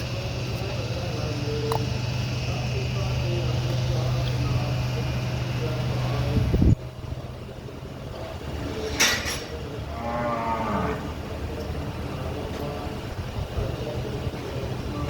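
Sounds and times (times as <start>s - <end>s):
steady low hum: 0.0s - 15.0s
cow lowing: 9.8s - 11.2s.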